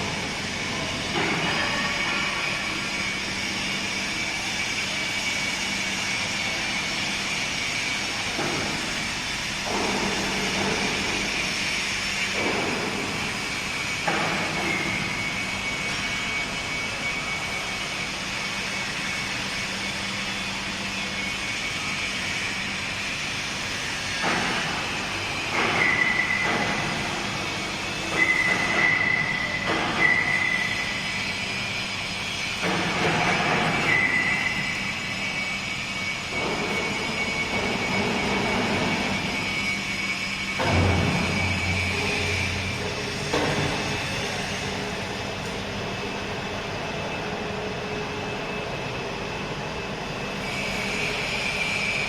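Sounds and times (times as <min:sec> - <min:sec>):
heavy industrial machinery din: 0:23.4 - 0:47.1
high-pitched metallic squeals: 0:24.6 - 0:45.3.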